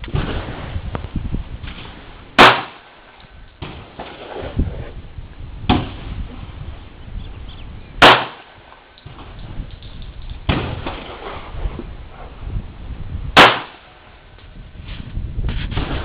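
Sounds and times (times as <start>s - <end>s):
pistol shots echoing: 2.4s - 3.0s, 8.0s - 8.6s, 13.4s - 13.9s.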